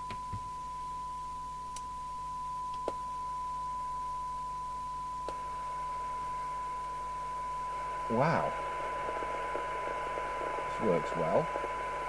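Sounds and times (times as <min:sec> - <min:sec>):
faint mains hum: 0:00.0 - 0:12.0
steady test tone: 0:00.2 - 0:12.0
radio receiver hiss: 0:06.8 - 0:12.0.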